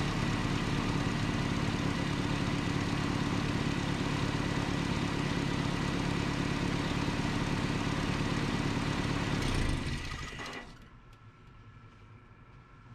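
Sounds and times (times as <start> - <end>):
truck engine idling: 0.0 - 9.9.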